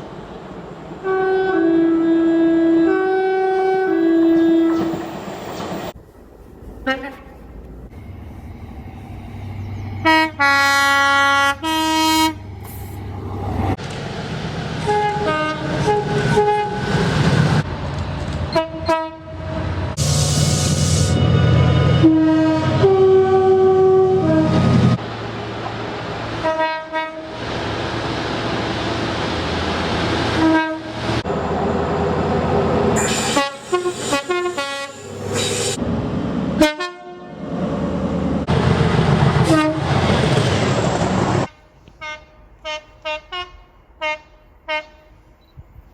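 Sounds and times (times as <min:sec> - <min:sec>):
moving train running noise: 0:00.0 - 0:42.0
train horn blasts: 0:01.0 - 0:04.9, 0:06.8 - 0:07.4, 0:10.0 - 0:12.4, 0:14.8 - 0:16.8, 0:18.5 - 0:19.7, 0:21.1 - 0:24.7, 0:26.4 - 0:27.3, 0:30.4 - 0:31.0, 0:33.0 - 0:35.5, 0:36.6 - 0:37.4, 0:39.4 - 0:39.9, 0:41.5 - 0:45.2.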